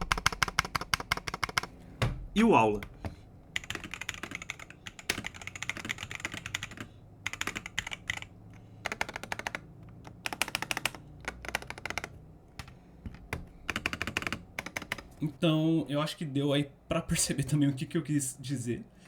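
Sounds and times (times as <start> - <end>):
keyboard keystrokes: 0.0 - 15.2.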